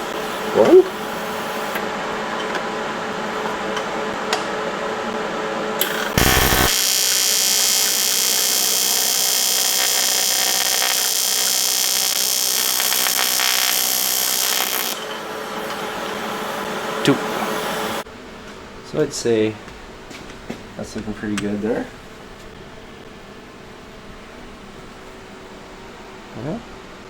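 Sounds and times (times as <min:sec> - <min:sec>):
welding arc crackle: 0:05.8 - 0:18.0
welding buzzing hiss: 0:05.8 - 0:18.0.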